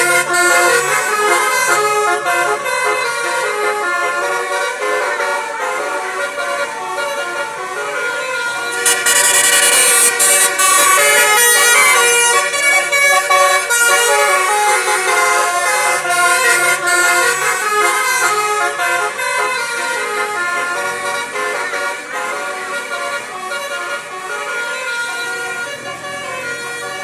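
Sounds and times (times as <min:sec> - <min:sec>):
multi-trumpet air horn melody: 0:00.0 - 0:27.0.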